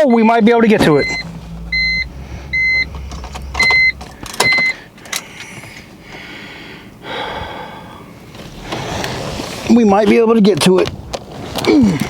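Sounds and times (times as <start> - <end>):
car warning chime beeps: 0.7 - 4.9.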